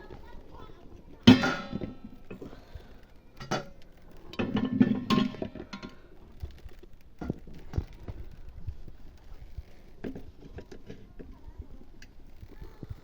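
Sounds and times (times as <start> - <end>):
dishes and utensils clinking: 1.3 - 2.6, 4.4 - 6.1.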